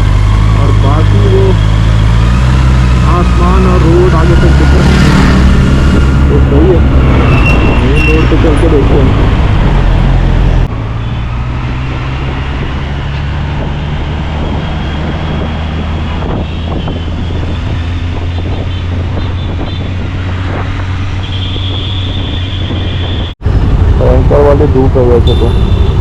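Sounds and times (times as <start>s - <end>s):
wind noise on microphone: 4.7s - 10.7s, 11.3s - 24.6s.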